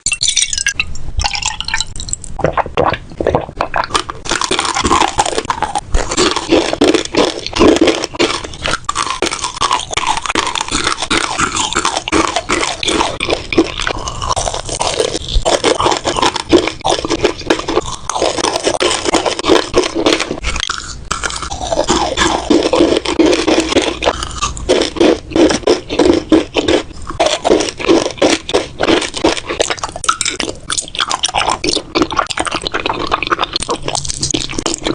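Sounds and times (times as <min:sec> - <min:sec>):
crunchy food being chewed: 0:01.2 - 0:34.9.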